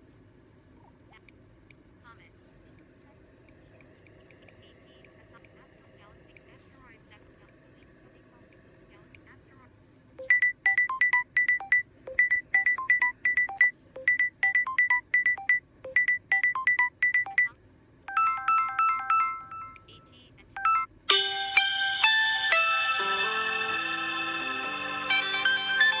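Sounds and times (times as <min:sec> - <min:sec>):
chiming ringtone melody: 0:10.2 - 0:17.5, 0:18.1 - 0:20.0, 0:20.6 - 0:26.0
phone ringtone electronic notes: 0:10.2 - 0:17.5, 0:18.1 - 0:26.0
fuller phone ringtone: 0:10.2 - 0:26.0.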